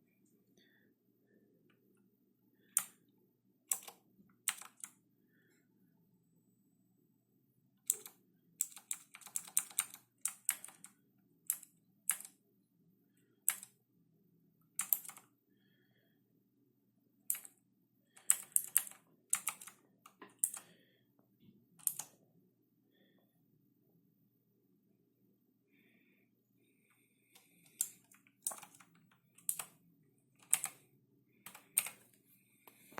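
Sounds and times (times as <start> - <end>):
mechanical keyboard typing: 3.7 - 4.9, 7.9 - 10.9, 11.5 - 12.3, 13.5 - 13.7, 14.8 - 15.2, 18.2 - 20.6, 21.8 - 22.1, 27.7 - 29.7, 30.4 - 30.8, 31.5 - 32.0.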